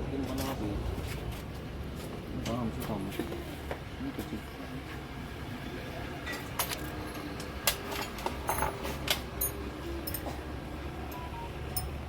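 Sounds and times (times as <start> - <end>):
metal tools clinking: 6.3 - 10.4, 11.1 - 12.0.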